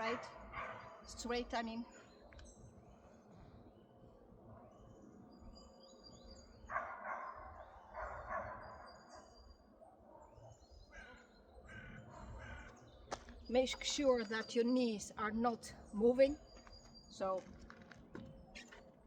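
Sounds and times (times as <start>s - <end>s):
distant dogs barking: 0.0s - 1.2s, 6.6s - 12.9s.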